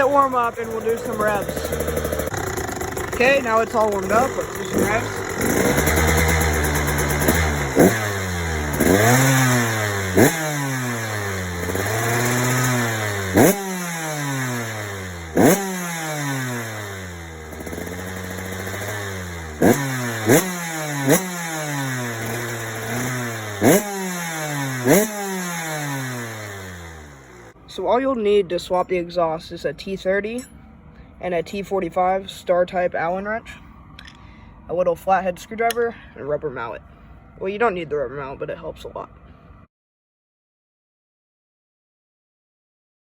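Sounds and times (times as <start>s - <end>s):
two-stroke engine throttle blips: 0.0s - 27.6s.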